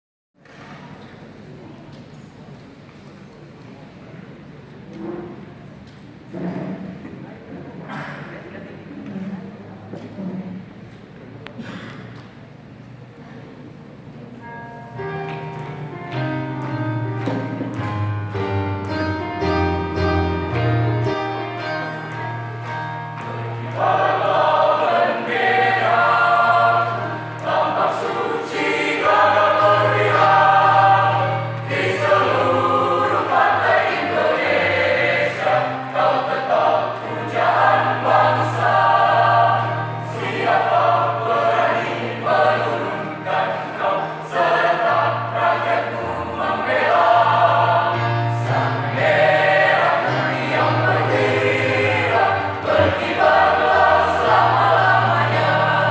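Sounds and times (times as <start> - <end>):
choir singing in parts: 15.8 - 55.9.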